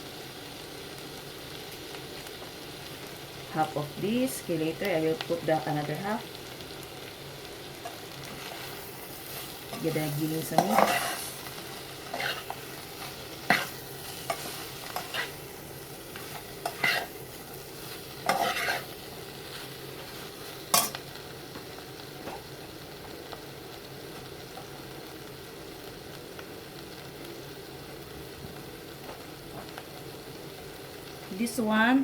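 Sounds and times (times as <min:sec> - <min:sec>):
meat sizzling in a frying pan: 0:00.0 - 0:32.0
utensil scraping a pan: 0:10.5 - 0:11.4, 0:12.0 - 0:15.4, 0:16.2 - 0:17.2, 0:17.8 - 0:21.0.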